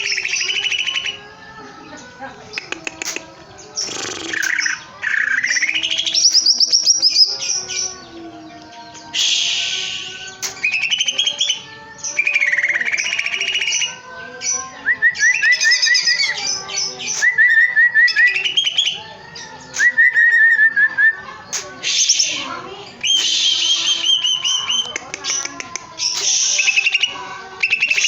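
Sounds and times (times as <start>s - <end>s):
bird singing trills and whistles: 0.0s - 1.3s, 1.9s - 28.0s
sharp clicks: 2.5s - 4.7s, 10.4s - 10.9s, 24.3s - 27.0s.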